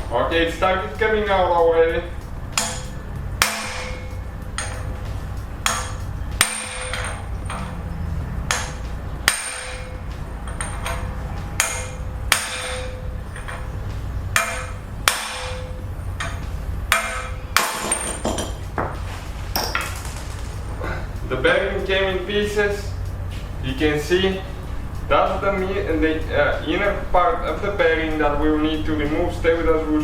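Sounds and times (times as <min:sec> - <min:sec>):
hammer striking steel socket: 0:02.5 - 0:07.8, 0:08.5 - 0:18.8.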